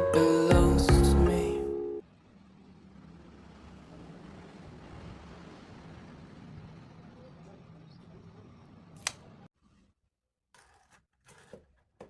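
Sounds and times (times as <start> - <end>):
pop music with a beat: 0.0 - 1.8.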